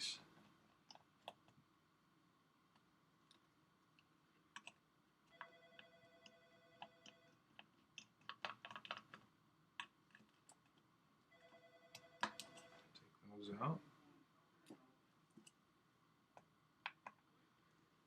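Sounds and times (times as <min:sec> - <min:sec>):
faint telephone ringing: 0:05.3 - 0:07.4, 0:11.3 - 0:13.0.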